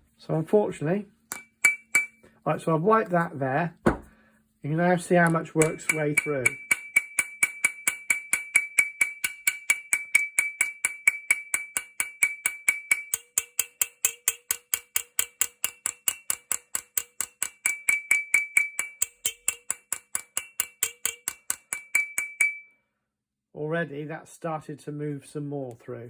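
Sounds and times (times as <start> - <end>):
small hammer tapping on steel: 1.3 - 2.2, 5.2 - 22.6.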